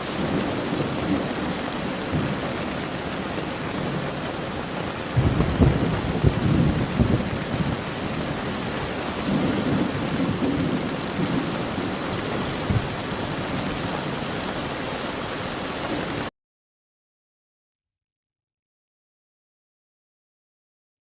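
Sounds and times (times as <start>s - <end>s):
low rolling thunder: 0.0s - 14.4s
steady rain: 0.0s - 16.3s.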